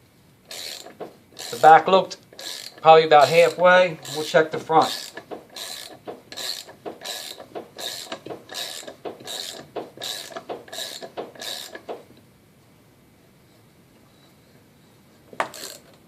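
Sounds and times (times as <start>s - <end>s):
ratchet wrench clicking: 0.5s - 1.8s, 2.4s - 12.0s, 15.4s - 15.9s.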